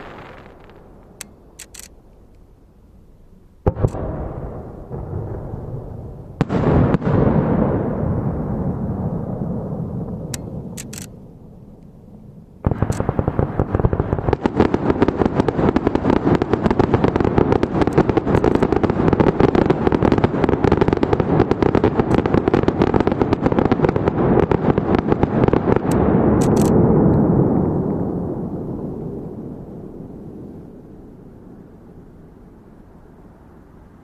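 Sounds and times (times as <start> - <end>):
crackling firework pops: 0.0 - 2.0, 3.7 - 5.1, 12.6 - 27.3.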